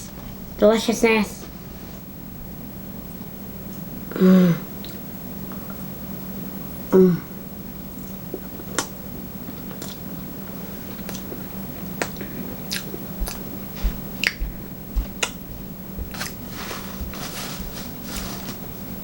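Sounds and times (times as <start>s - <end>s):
low steady hum: 0.0s - 19.0s
person chewing wet mouth smacks: 8.3s - 10.0s, 11.0s - 16.4s.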